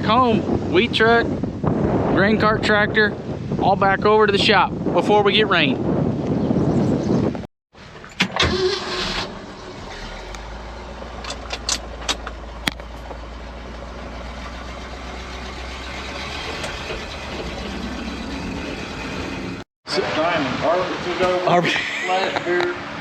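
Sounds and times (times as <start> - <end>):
vehicle engine idling: 7.8 - 19.6.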